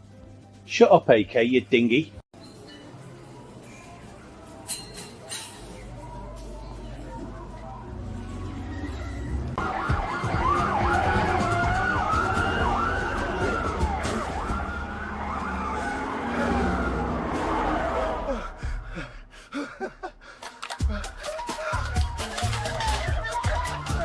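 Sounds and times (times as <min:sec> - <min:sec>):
sirens wailing: 0:08.5 - 0:18.8, 0:21.1 - 0:24.0.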